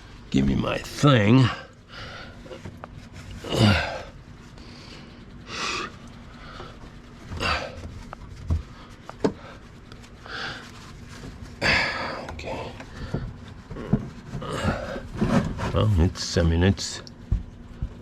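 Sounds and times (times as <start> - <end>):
man breathing and grunting: 3.4 - 7.9, 11.6 - 15.2.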